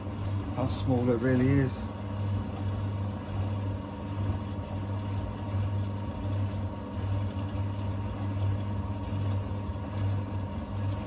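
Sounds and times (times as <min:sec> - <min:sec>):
tumble dryer motor hum: 0:00.0 - 0:11.0.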